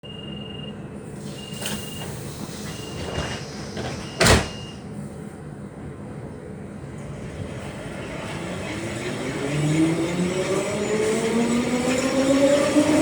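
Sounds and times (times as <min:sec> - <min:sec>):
high door warning beep: 0:00.0 - 0:04.8
low train hum: 0:00.1 - 0:13.0
sliding doors shutting with thud: 0:01.3 - 0:04.8.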